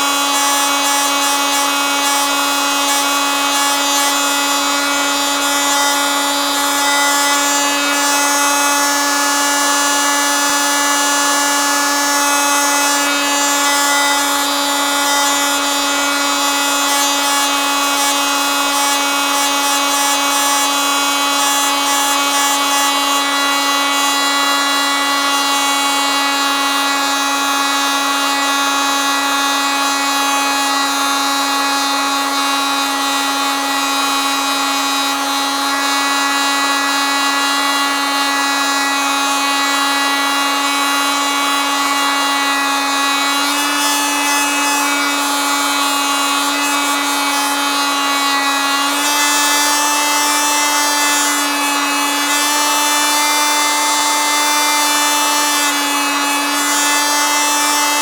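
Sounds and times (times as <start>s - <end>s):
oscillating multitool buzzing: 0.0s - 24.2s.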